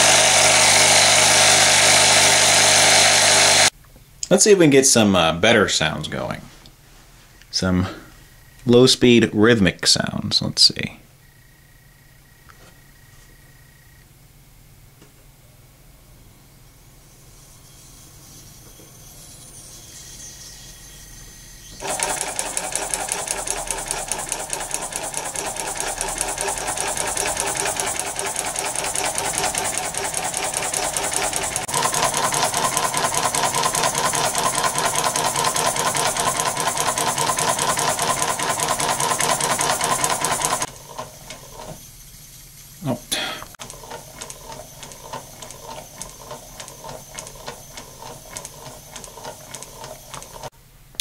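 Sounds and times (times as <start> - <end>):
air compressor mechanical clatter: 0.0 - 3.7, 21.8 - 42.8, 43.5 - 50.5.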